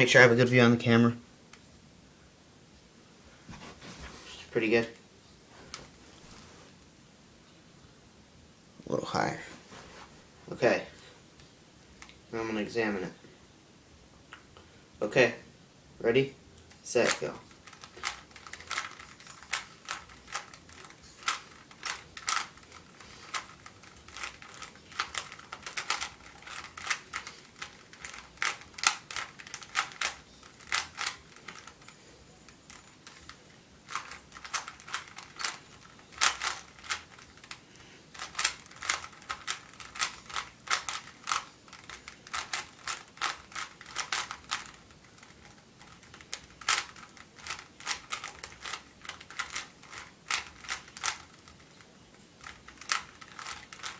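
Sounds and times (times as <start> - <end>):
puzzle cube plastic clicks: 16.6 - 53.9.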